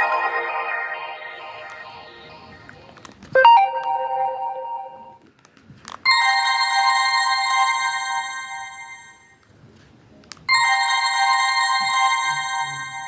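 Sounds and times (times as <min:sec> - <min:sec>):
phone ringtone chiming: 0:00.0 - 0:05.2.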